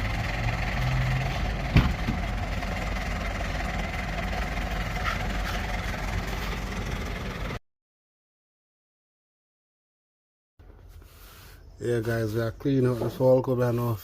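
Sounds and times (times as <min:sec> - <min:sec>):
vehicle engine rumbling: 0:00.0 - 0:07.6, 0:10.6 - 0:14.0.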